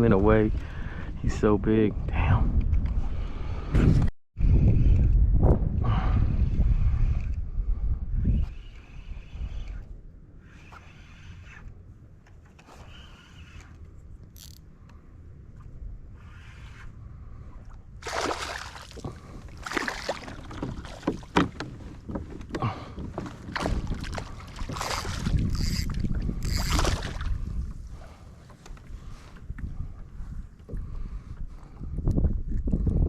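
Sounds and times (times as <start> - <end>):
wind buffeting microphone: 0.0 - 10.0, 16.7 - 33.0
water splashing against kayak: 18.0 - 27.6.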